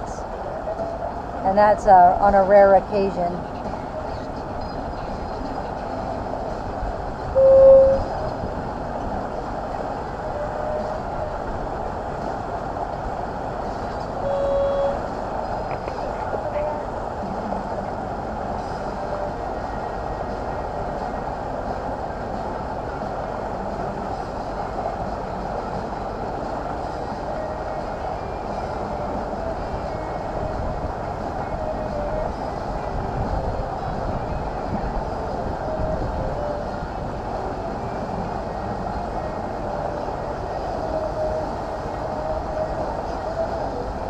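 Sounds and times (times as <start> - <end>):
boat engine: 0.0 - 44.0
short horn toot: 7.4 - 8.1, 14.2 - 15.0.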